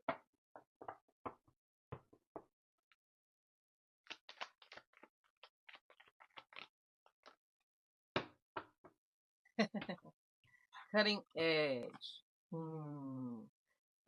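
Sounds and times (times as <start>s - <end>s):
cards being shuffled: 4.1s - 7.4s.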